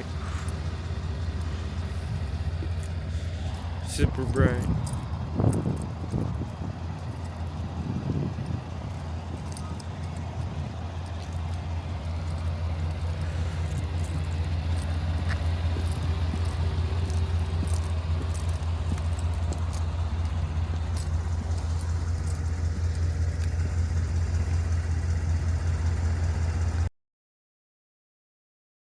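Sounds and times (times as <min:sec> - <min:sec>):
car engine idling: 0:00.0 - 0:26.9.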